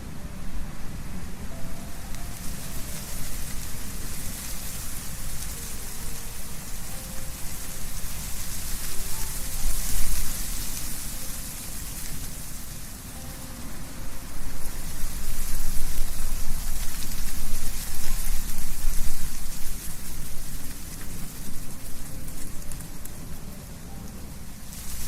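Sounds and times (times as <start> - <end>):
wind rustling leaves: 0.0 - 25.0.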